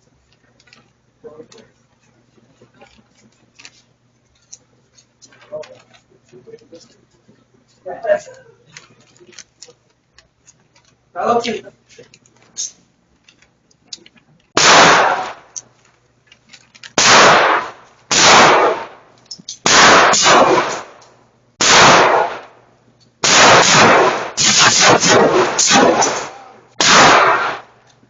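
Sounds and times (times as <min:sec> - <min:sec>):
gunshots with ringing echo: 0:14.6 - 0:15.5, 0:17.0 - 0:19.0, 0:19.7 - 0:21.0, 0:21.6 - 0:22.6, 0:23.2 - 0:27.8.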